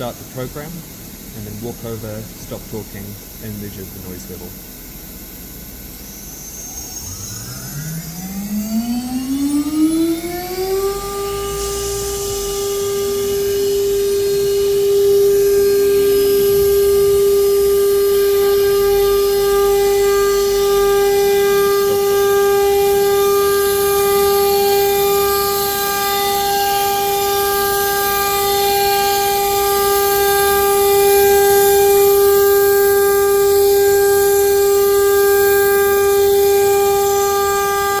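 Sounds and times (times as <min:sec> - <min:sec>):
router spindle high whine: 0:00.0 - 0:38.0
router bit hissing through board: 0:10.8 - 0:38.0.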